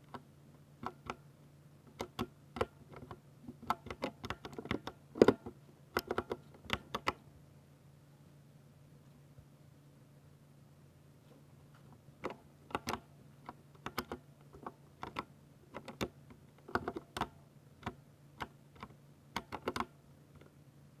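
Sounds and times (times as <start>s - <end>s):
faint low hum: 0.0s - 21.0s
mechanical keyboard typing: 0.8s - 1.2s, 1.9s - 7.2s, 12.2s - 13.1s, 13.8s - 20.0s.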